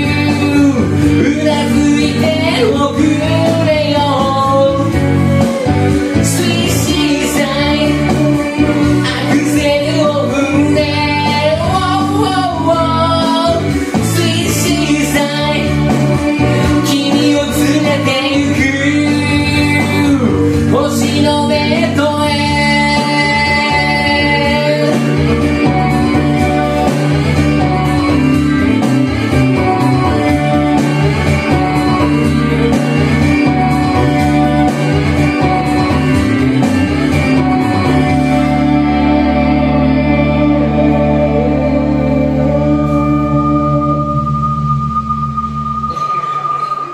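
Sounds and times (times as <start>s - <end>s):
high voice singing ad-libs: 0.0s - 5.0s, 6.2s - 25.2s
pop-rock backing music: 0.0s - 46.9s.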